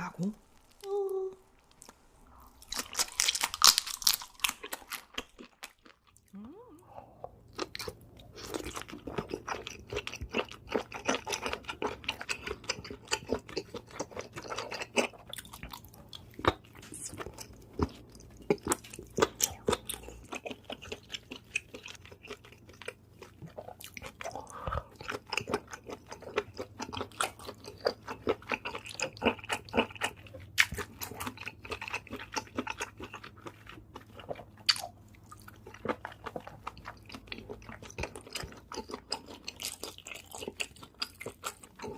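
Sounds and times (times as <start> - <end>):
close chewing with wet crunches: 0.5 - 6.4, 7.0 - 41.9.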